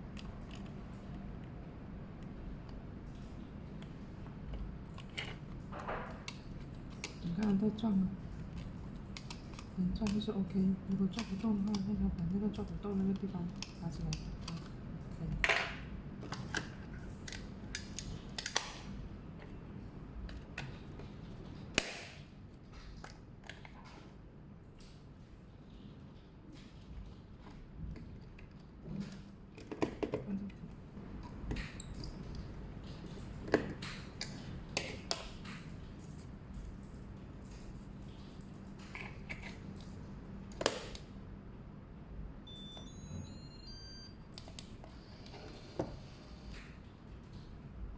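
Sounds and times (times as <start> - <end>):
short high electronic beeps: 42.5 - 44.1.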